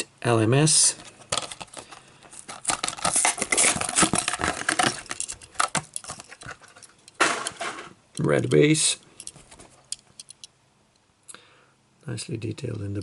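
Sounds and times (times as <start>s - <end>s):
blister pack crinkling and tearing: 1.3s - 6.4s.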